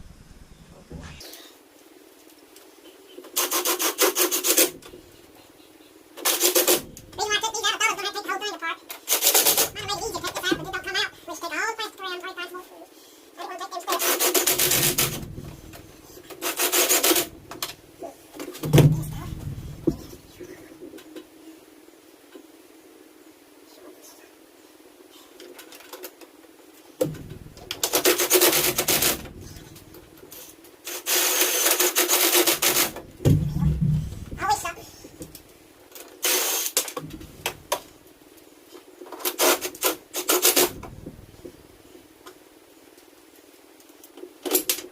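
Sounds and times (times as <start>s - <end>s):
hands scraping and rubbing parts: 2.2s - 5.5s, 6.2s - 11.2s, 13.8s - 21.3s, 27.0s - 42.4s
harsh rasping scrapes: 13.9s - 17.7s.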